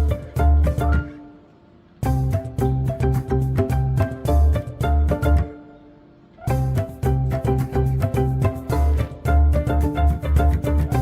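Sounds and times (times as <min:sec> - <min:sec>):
upbeat background music: 0:00.0 - 0:01.4, 0:02.0 - 0:11.0.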